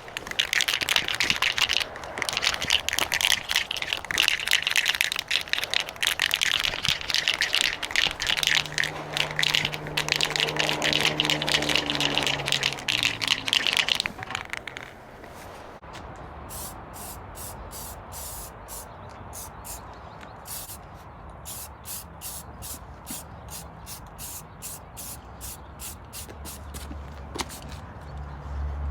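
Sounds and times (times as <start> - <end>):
spray paint can rattling: 0.0 - 15.0, 16.5 - 19.8, 20.5 - 20.8, 21.4 - 27.8.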